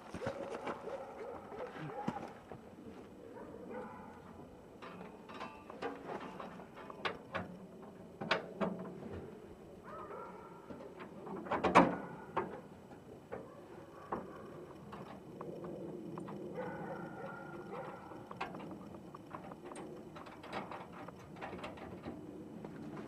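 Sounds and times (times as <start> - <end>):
clicks and knocks of hand tools: 4.8 - 7.6.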